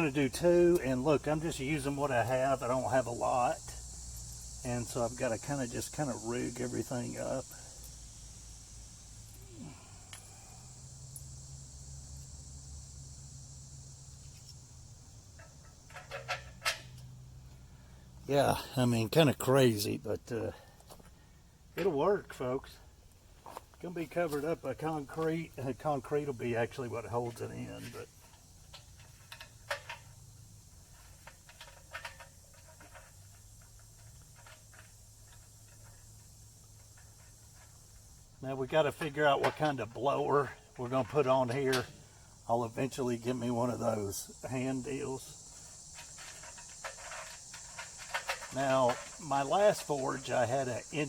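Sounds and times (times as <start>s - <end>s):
faint low hum: 0.0s - 23.2s
crickets chirring: 0.0s - 51.0s.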